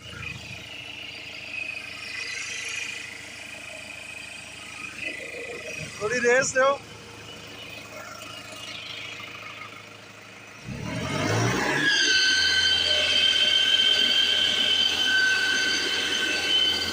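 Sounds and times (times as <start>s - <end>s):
diesel engine idling and revving: 0.0s - 16.9s
high-pitched squeal: 0.0s - 16.9s.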